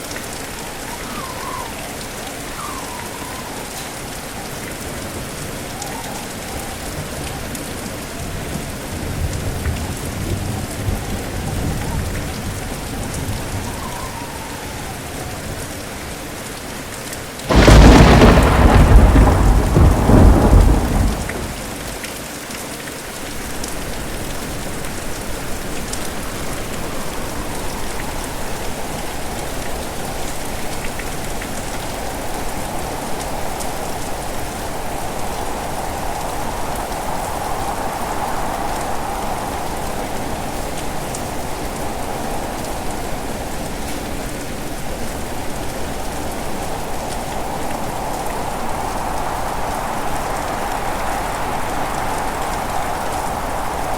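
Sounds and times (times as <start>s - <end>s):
heavy rain: 0.0s - 53.9s
loud thunderclap: 17.5s - 22.0s
thunder rumbling: 17.5s - 22.0s, 46.0s - 53.9s.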